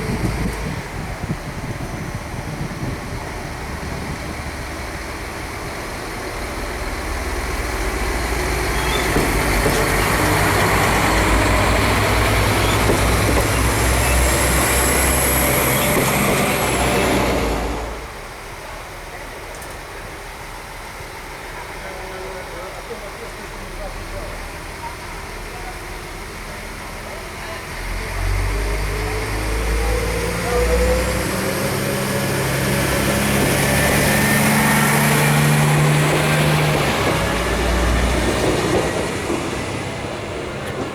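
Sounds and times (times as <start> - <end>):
diesel railbus engine rumble: 0.0 - 40.9.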